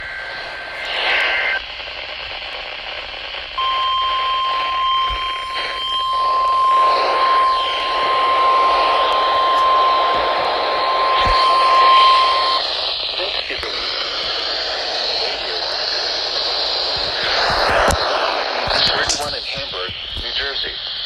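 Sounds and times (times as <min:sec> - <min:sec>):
radio static: 0:00.0 - 0:21.0
steady warning alarm tone: 0:03.5 - 0:17.6.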